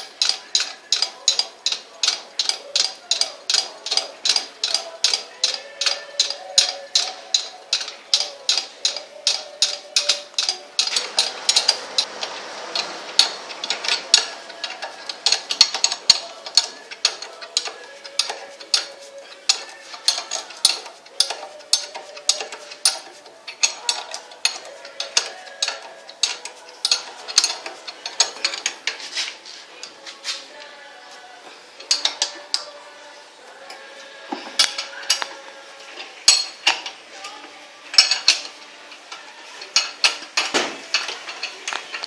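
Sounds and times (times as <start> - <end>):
ratchet wrench clicking: 0.0 - 29.0, 31.9 - 32.7.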